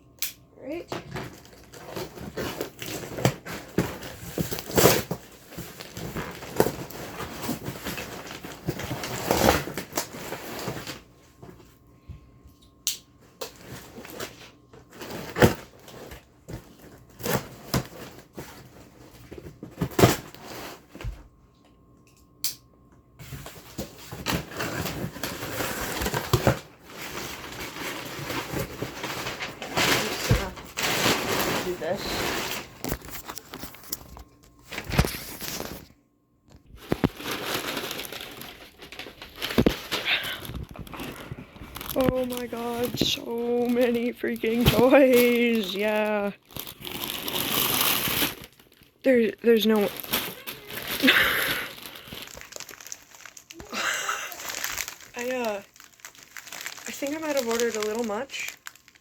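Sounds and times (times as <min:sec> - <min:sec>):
cardboard crunching: 0:01.1 - 0:11.0, 0:23.3 - 0:35.9, 0:36.6 - 0:59.0
packaging rustling: 0:01.1 - 0:11.1, 0:23.3 - 0:35.9, 0:36.5 - 0:59.0.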